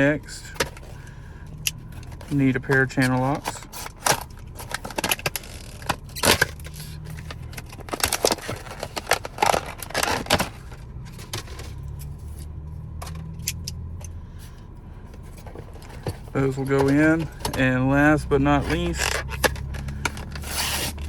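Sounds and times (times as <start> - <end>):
low steady hum: 0.0 - 21.0
pliers clicking and clinking: 13.0 - 14.2.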